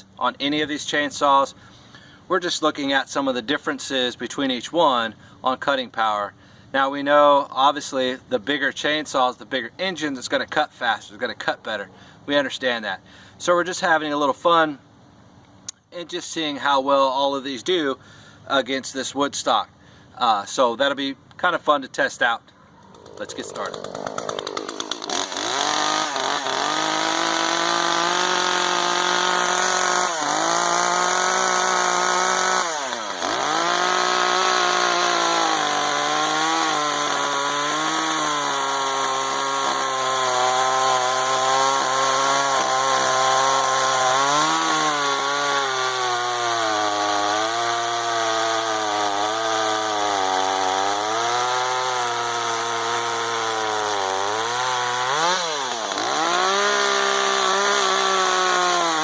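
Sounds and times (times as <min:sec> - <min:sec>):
chainsaw cutting log: 0:22.8 - 0:59.0.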